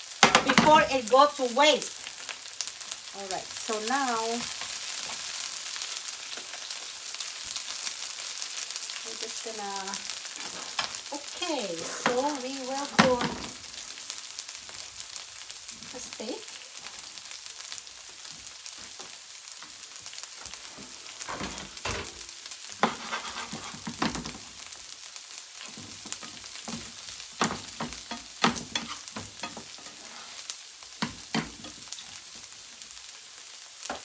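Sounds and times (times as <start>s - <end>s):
food sizzling in a pan: 0.0s - 34.0s
spatula scraping a pan: 10.2s - 13.9s, 20.4s - 24.7s, 25.6s - 32.5s.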